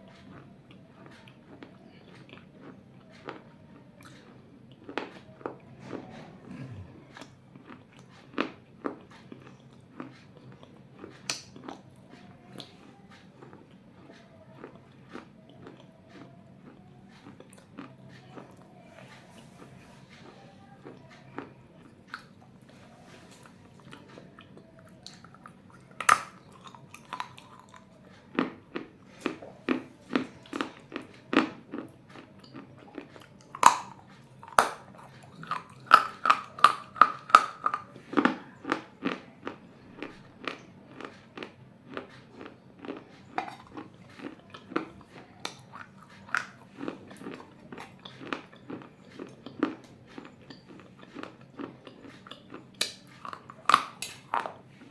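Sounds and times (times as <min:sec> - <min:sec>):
person crunching baked clay: 0:22.9 - 0:54.9.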